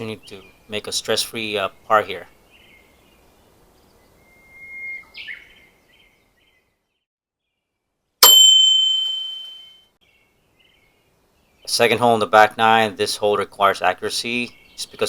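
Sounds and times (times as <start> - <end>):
bird chirping: 0.0 - 7.7, 13.8 - 15.0
sharp metallic ding: 8.2 - 9.8.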